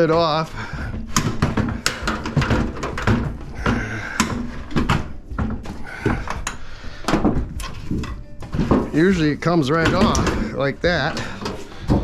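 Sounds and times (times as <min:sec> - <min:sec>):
sheet metal knocks and rattles: 0:00.0 - 0:12.0.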